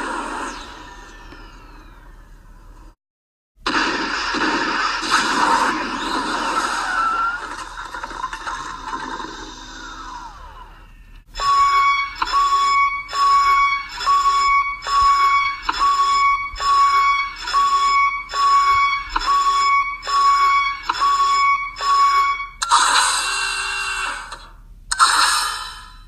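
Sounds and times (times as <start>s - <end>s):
loud electronic warning beeps: 11.4s - 24.3s.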